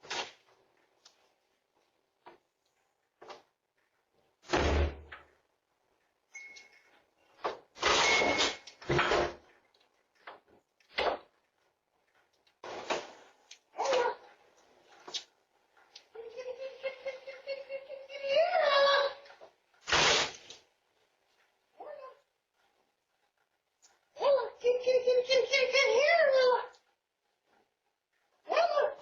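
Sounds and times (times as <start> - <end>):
door slamming: 4.5 - 5.2.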